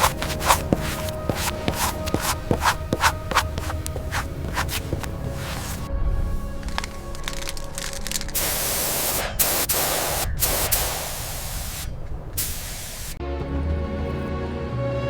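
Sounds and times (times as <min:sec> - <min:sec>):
background music: 0:00.0 - 0:08.5, 0:13.2 - 0:15.0
paint spray gun hissing: 0:08.4 - 0:13.2.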